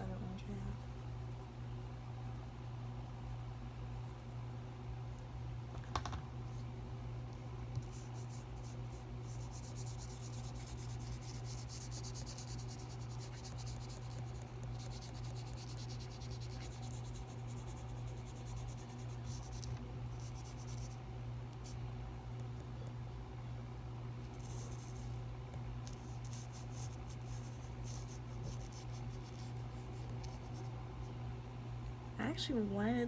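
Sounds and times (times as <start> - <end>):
paintbrush scratching on paper: 7.8 - 21.0, 24.4 - 25.2, 25.9 - 30.7.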